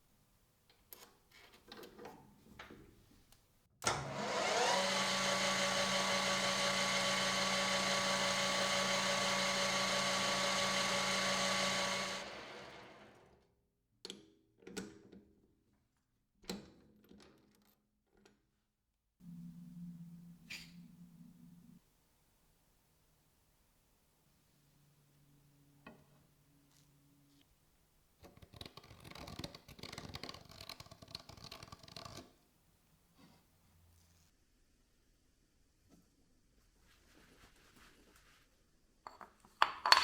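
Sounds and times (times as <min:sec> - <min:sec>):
power tool motor whining: 0:03.8 - 0:13.1.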